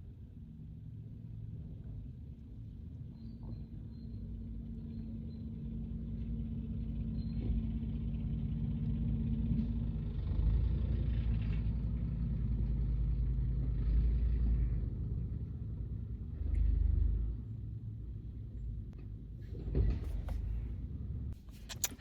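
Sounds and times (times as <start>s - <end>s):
car engine rumbling: 0.0s - 22.0s.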